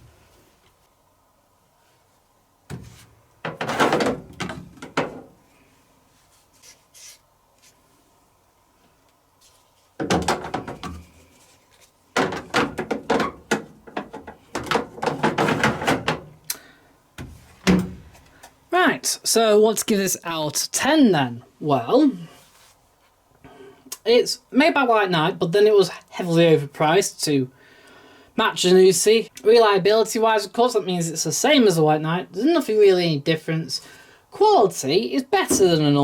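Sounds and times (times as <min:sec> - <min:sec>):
dryer door knocking and rattling: 0:03.4 - 0:05.3, 0:10.0 - 0:11.0, 0:12.2 - 0:16.3, 0:17.2 - 0:18.0.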